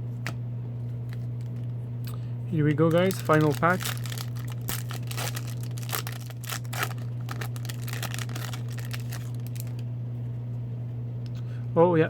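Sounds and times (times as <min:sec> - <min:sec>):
wrapper tearing and crinkling: 0:02.8 - 0:09.8.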